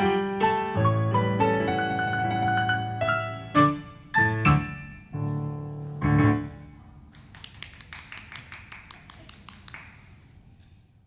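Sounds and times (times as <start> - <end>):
piano chords ringing: 0.0 - 6.9.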